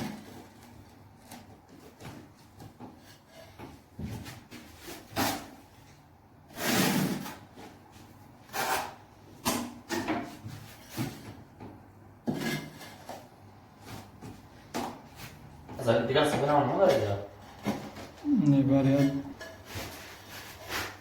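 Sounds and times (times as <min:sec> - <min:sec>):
loud scrape: 0:06.5 - 0:07.4.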